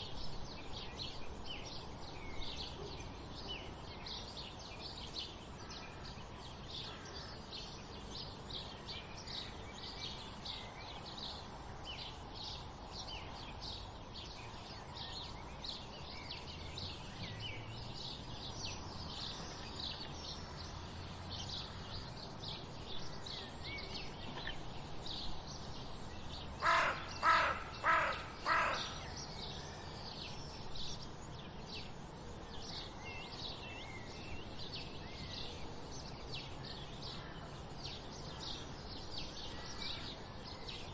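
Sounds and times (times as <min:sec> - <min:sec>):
sparrows chirping: 0:00.0 - 0:40.9
larger bird calling: 0:26.6 - 0:29.0.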